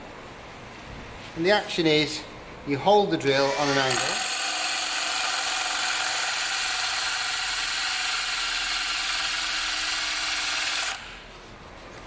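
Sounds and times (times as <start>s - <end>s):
drill grinding into tile: 3.6s - 11.1s.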